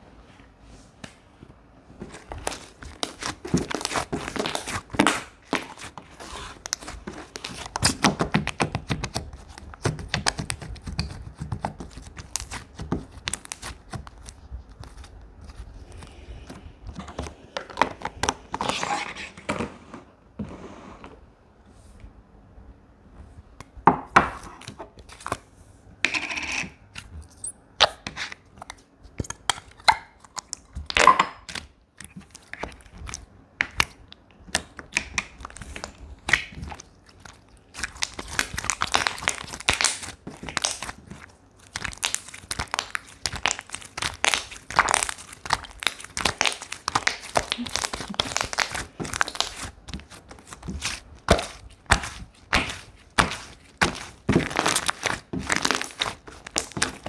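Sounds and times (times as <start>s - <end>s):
slime clicking and popping: 30.4s - 57.0s.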